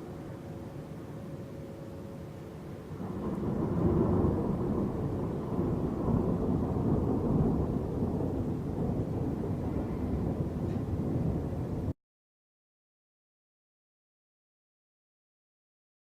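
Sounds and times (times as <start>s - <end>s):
rolling thunder: 2.9s - 12.0s.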